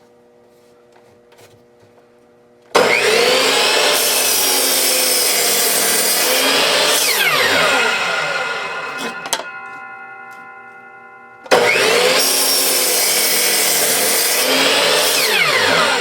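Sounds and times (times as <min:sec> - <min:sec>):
chop saw cutting wood: 0:02.7 - 0:09.6, 0:11.5 - 0:16.0
saw blade winding down: 0:02.8 - 0:16.0.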